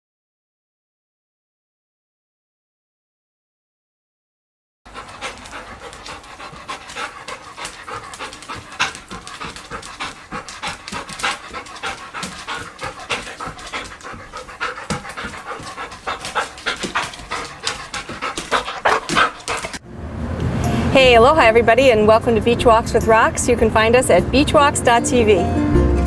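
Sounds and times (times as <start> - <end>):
dog panting: 4.9 - 19.8, 20.5 - 26.0.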